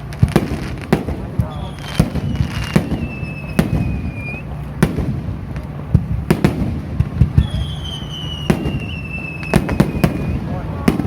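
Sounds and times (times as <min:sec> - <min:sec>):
fireworks banging: 0:00.0 - 0:11.0
high falling whistle: 0:01.5 - 0:04.5, 0:07.4 - 0:10.5.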